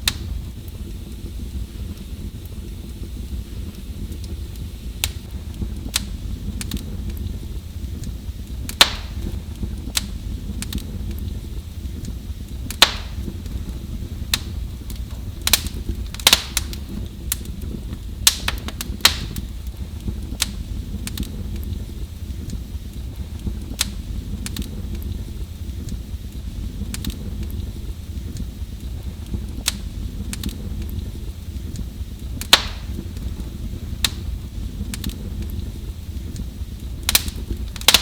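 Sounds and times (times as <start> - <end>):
low rumble of burning: 0.0 - 38.0
sharp pops of fire: 0.0 - 38.0
wood fire crackling: 0.0 - 38.0.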